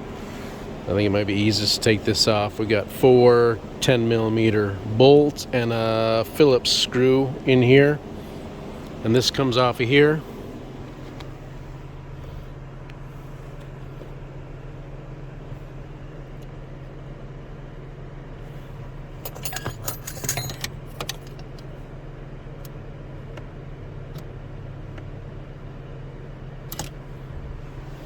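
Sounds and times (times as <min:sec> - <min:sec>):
low hum: 0:00.0 - 0:20.8, 0:21.8 - 0:28.0
metallic jingling and clicking: 0:19.2 - 0:21.5.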